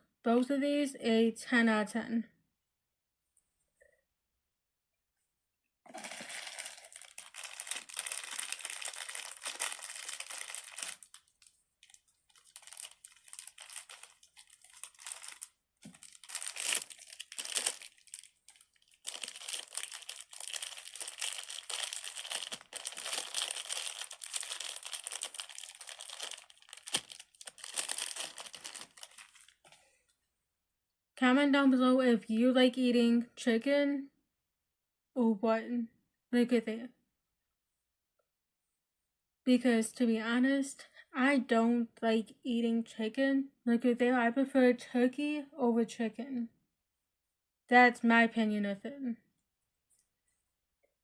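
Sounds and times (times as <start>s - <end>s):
plastic packaging crinkling: 5.9s - 29.8s.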